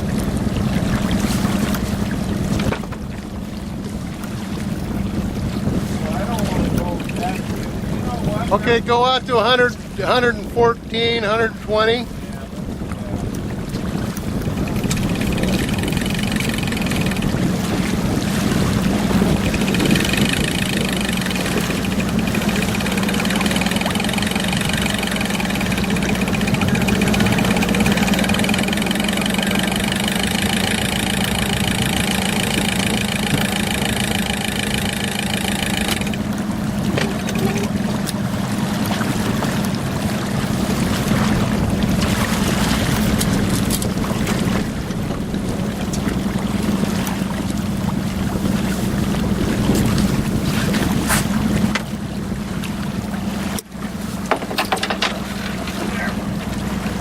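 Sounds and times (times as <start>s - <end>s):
boat engine running: 0.0s - 57.0s
high mechanical whine: 14.6s - 17.6s, 18.8s - 36.4s.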